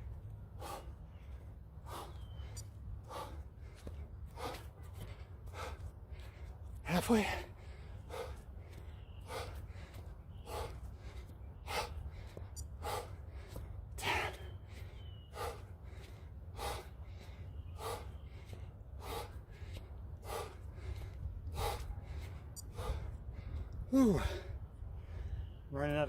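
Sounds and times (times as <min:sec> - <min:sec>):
steady low hum: 0:00.0 - 0:25.6
man breathing hard: 0:00.0 - 0:25.7.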